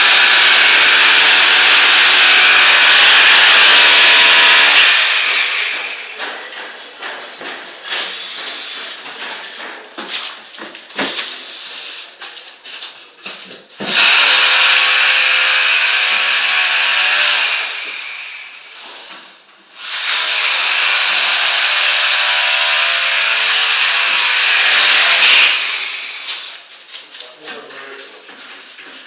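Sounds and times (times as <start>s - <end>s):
power tool running: 0.0s - 7.1s, 13.9s - 18.8s, 19.8s - 26.6s.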